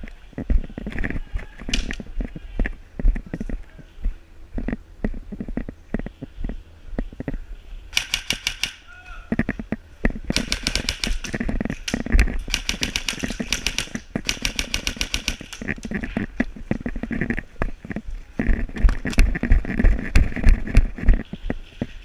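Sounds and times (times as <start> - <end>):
airsoft guns firing bursts: 8.0 - 8.9, 10.3 - 15.8.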